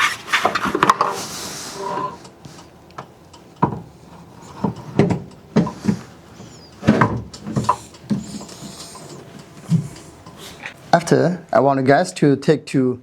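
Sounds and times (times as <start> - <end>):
knocks and clunks of handled equipment: 2.0 - 10.8.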